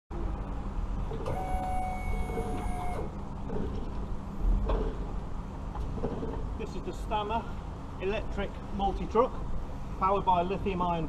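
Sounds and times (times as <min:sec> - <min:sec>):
constant low rumble: 0:00.1 - 0:11.0
electric motor whine: 0:01.3 - 0:03.1.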